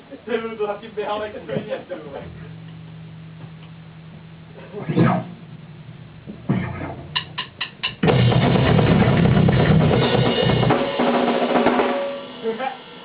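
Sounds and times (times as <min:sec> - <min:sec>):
drum kit playing: 0:02.2 - 0:13.0
drumstick clicks: 0:07.1 - 0:08.0.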